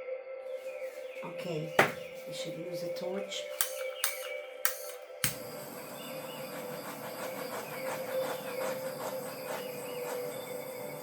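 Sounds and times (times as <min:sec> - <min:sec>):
butane torch hissing: 0:03.6 - 0:11.0.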